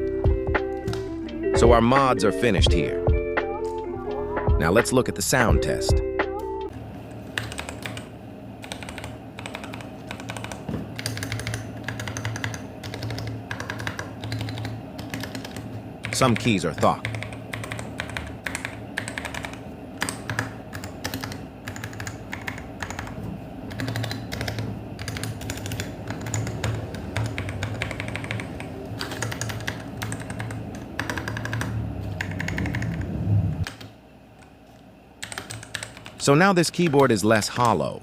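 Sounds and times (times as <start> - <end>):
steady low hum: 0.0 - 38.0
mechanical keyboard typing: 7.4 - 33.9, 35.2 - 36.2.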